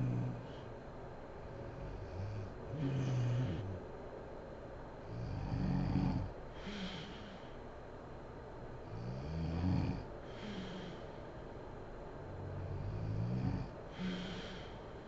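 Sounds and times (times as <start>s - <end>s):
woman snoring: 0.0s - 0.6s, 1.7s - 3.8s, 5.1s - 7.4s, 8.9s - 11.0s, 12.4s - 14.8s
breathy exhale: 2.7s - 3.8s, 6.6s - 7.6s, 10.2s - 11.5s, 13.9s - 15.0s.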